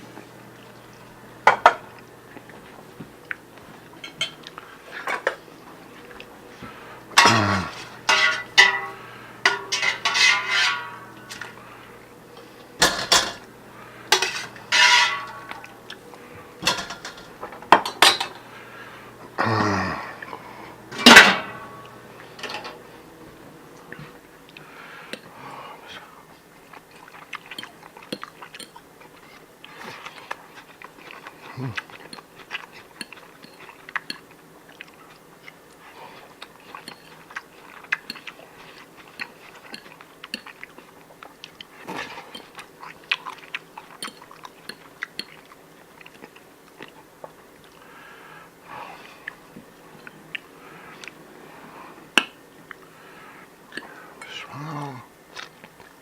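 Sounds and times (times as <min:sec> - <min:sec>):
cutlery clinking on plates: 0:01.5 - 0:01.8, 0:04.0 - 0:05.4, 0:07.1 - 0:11.6, 0:12.8 - 0:13.5, 0:14.1 - 0:15.8, 0:16.6 - 0:18.4, 0:20.9 - 0:22.8.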